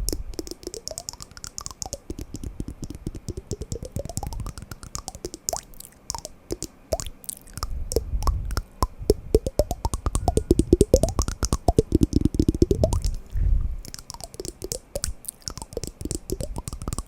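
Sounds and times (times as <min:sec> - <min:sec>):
wooden blocks knocking: 0:08.0 - 0:13.2.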